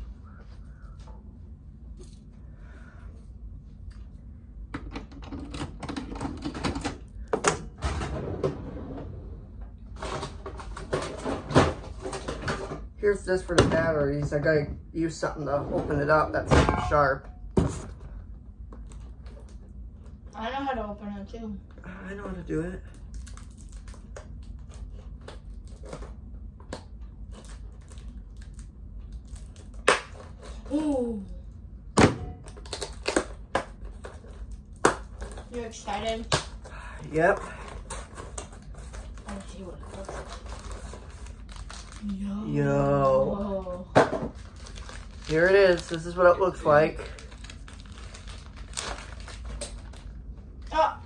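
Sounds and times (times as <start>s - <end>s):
packaging clicking and crackling: 22.9s - 26.1s, 32.4s - 35.5s, 44.3s - 46.2s, 47.0s - 50.1s
packaging clicks and scrapes: 37.4s - 42.1s.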